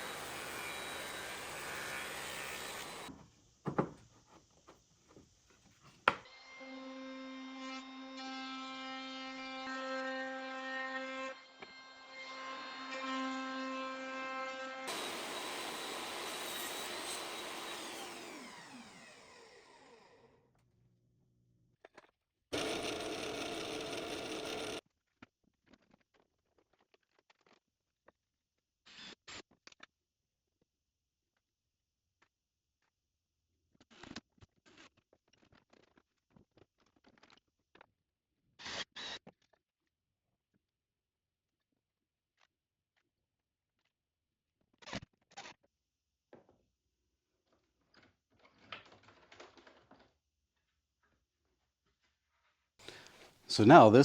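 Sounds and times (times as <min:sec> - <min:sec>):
electric power tool running: 0:00.0 - 0:03.2, 0:14.9 - 0:20.0, 0:22.5 - 0:24.8
sharp knocks on wood: 0:03.7 - 0:04.0.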